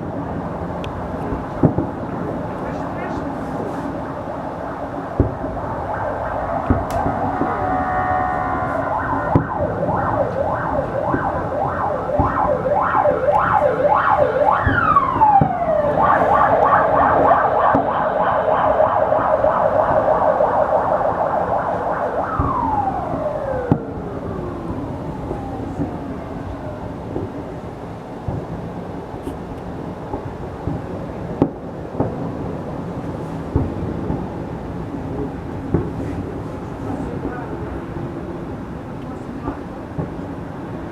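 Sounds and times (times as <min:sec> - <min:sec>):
firework bangs: 0:00.3 - 0:38.5
low rumble: 0:03.2 - 0:29.1
fireworks whistling: 0:03.6 - 0:26.2.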